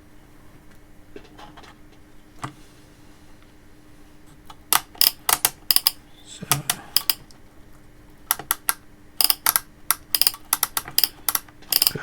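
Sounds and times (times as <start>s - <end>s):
faint steady hum: 0.0s - 12.0s
plastic parts clicking and tapping: 4.5s - 7.4s, 8.2s - 12.0s.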